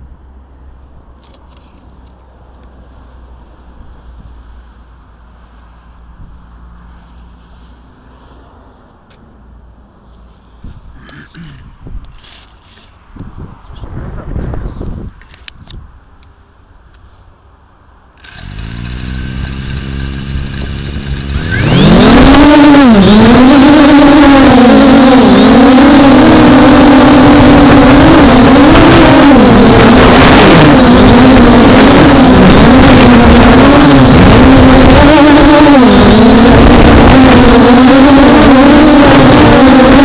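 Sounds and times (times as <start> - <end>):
drone motors humming: 18.2 - 40.0
drone motors whining: 18.2 - 40.0.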